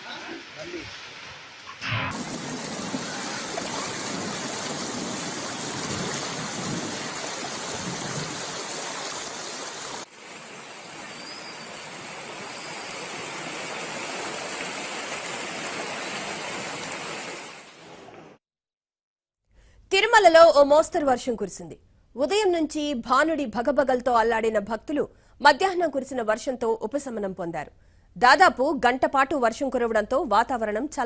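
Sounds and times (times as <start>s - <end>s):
heavy rain pouring: 0.0s - 18.0s.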